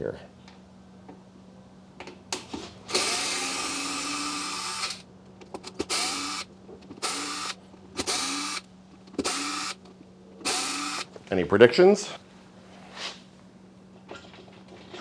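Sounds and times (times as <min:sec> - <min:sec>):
cordless drill running: 0:02.9 - 0:11.1.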